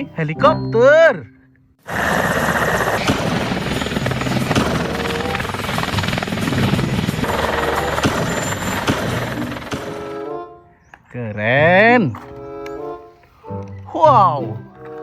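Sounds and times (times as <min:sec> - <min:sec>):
helicopter rotor chopping: 0:01.9 - 0:10.3
helicopter engine noise: 0:01.9 - 0:10.4.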